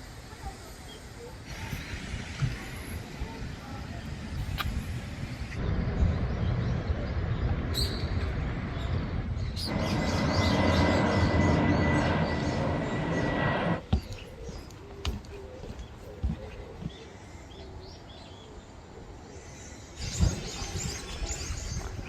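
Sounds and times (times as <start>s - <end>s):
vehicles passing: 5.5s - 13.9s.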